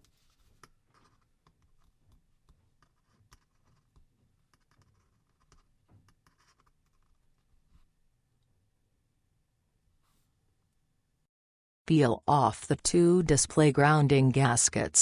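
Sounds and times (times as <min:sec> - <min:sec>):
tweezers scratching and clicking: 0:00.3 - 0:07.2.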